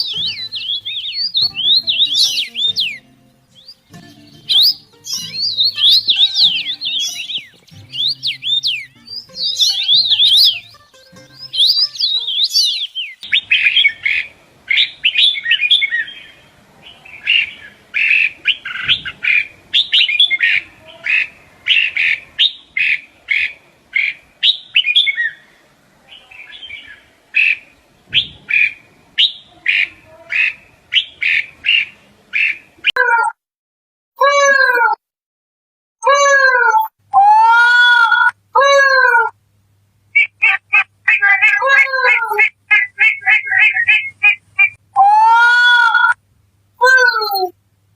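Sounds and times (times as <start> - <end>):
bird whistling: 0.0 - 10.8, 11.4 - 14.1, 41.4 - 44.7
bird chirping: 0.0 - 25.4, 40.2 - 44.8.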